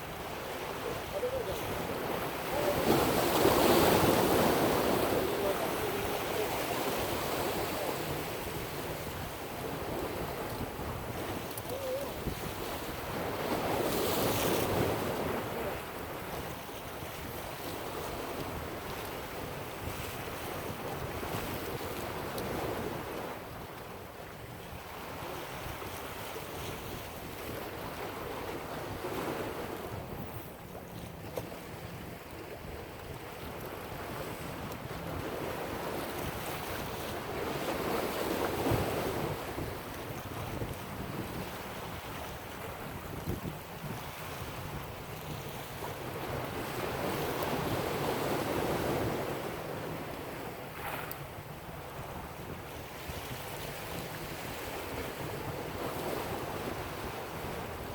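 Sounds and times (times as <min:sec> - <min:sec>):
ocean surf washing in: 0:00.0 - 0:16.1
wind buffeting microphone: 0:00.0 - 0:57.9.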